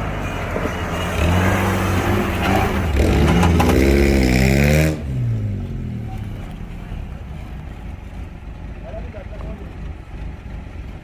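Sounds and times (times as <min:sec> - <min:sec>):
off-road vehicle engine revving: 0:00.0 - 0:07.9.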